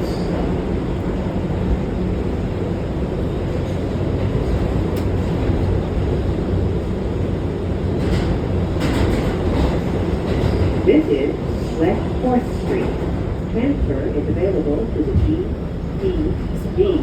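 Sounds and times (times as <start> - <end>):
subway car wheels rumbling: 0.0 - 17.0.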